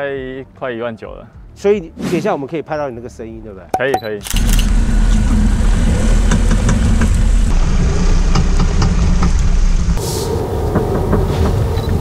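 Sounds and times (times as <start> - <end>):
car engine low rumble: 4.4 - 12.0.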